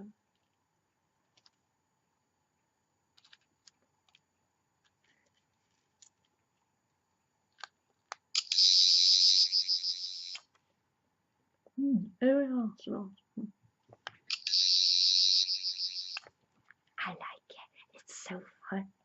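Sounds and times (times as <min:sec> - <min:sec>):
high pulsing electronic buzz: 0:14.4 - 0:16.2.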